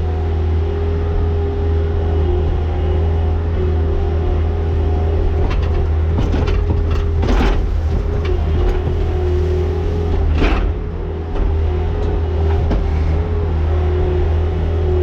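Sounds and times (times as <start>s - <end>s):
farm machine engine humming: 0.0s - 15.0s.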